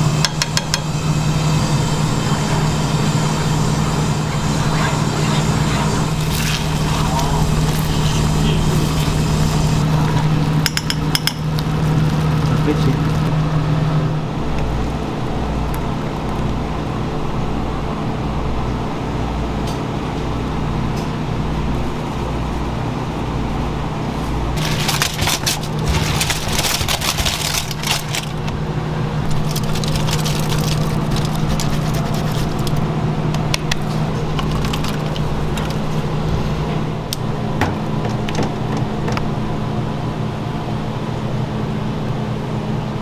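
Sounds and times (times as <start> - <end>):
low mechanical hum: 0.0 - 43.0
dense crackling and clicking: 4.3 - 10.6, 11.4 - 13.3, 24.3 - 28.6, 29.3 - 32.8.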